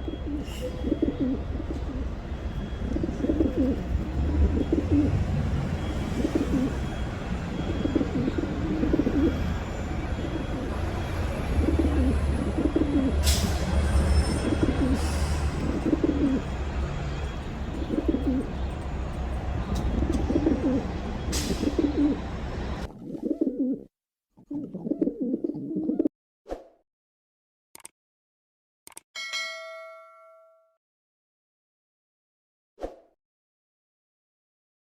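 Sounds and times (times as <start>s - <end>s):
pigeon cooing: 0.0s - 5.3s, 6.0s - 9.5s, 10.2s - 13.2s, 14.4s - 16.6s, 17.8s - 18.6s, 19.8s - 26.1s.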